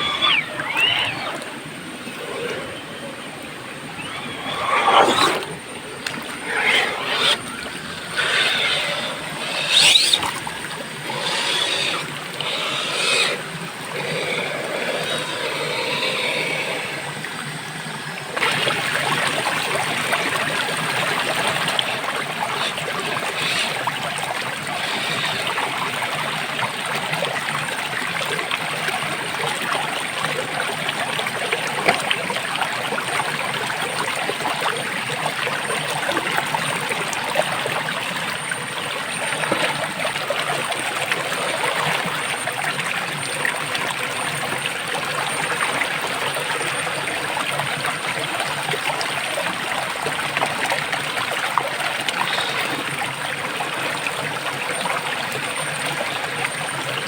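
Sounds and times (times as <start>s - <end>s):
flowing water rushing: 0.0s - 57.0s
small electric motor whining: 3.9s - 13.4s.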